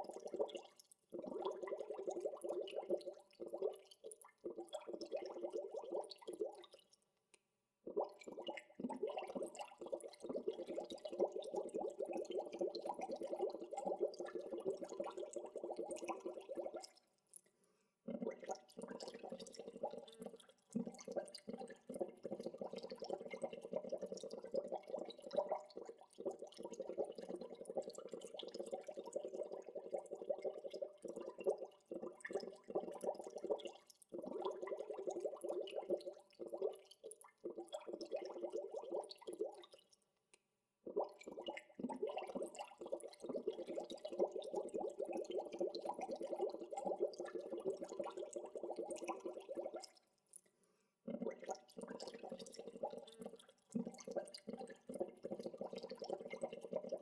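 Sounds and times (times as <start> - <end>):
water bubbling and gurgling: 0.0 - 6.8, 7.9 - 17.0, 18.1 - 39.8, 40.9 - 50.0, 51.1 - 57.0.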